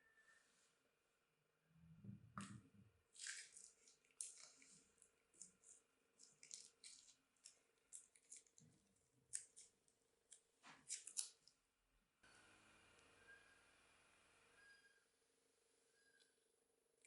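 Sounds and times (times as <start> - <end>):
slime squelches: 2.4 - 11.6
crunchy slime crackling: 3.1 - 11.5.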